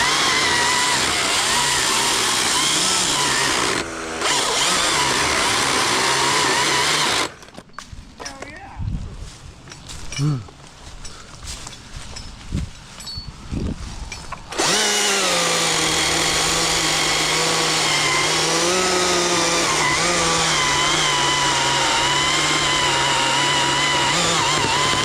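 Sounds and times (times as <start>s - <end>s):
chainsaw cutting wood: 0.0s - 7.5s, 14.4s - 25.0s.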